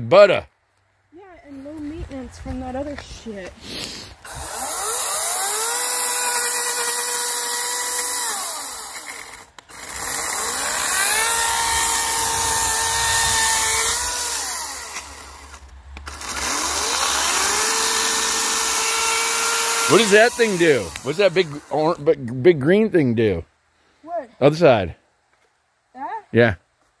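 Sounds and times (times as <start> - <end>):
electric chainsaw motor whining: 4.2 - 22.0.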